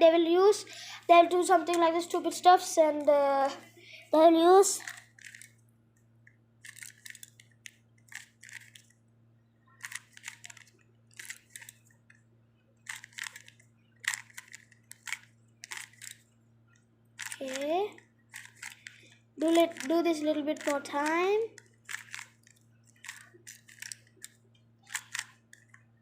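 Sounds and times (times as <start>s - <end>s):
faint steady hum: 0.0s - 26.0s
puzzle cube clacking twists: 4.8s - 5.6s, 6.6s - 8.9s, 9.8s - 11.8s, 12.8s - 16.2s, 17.2s - 25.8s.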